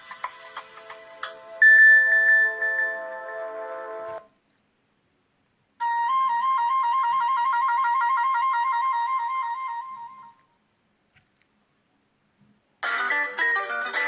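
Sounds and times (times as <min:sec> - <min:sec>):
phone ringtone trill: 0:01.6 - 0:03.5.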